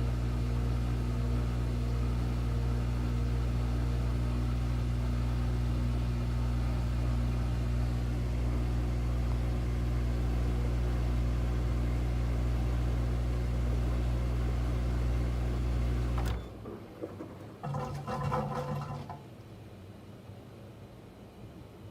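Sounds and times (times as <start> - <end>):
washing machine motor humming: 0.0 - 19.3.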